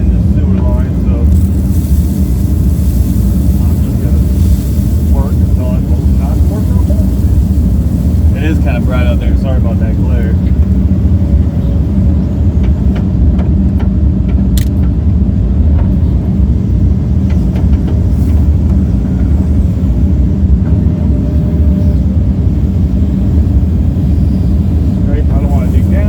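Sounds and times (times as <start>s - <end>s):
excavator diesel engine rumbling: 0.0s - 26.0s.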